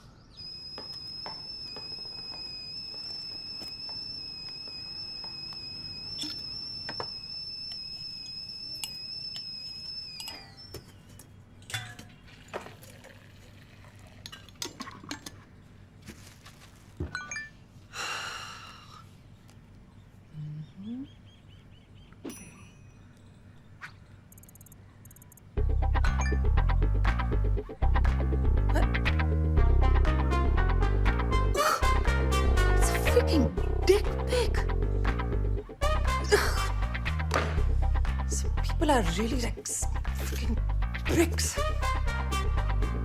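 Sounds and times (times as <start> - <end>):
high-pitched whistle: 0.3 - 10.7.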